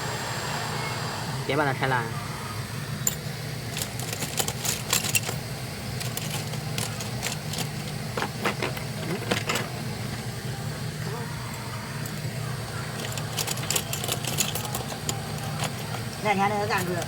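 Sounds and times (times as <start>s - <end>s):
steady low hum: 0.0s - 17.0s
small tools clicking on metal: 3.1s - 5.4s, 6.0s - 9.7s, 13.0s - 17.0s.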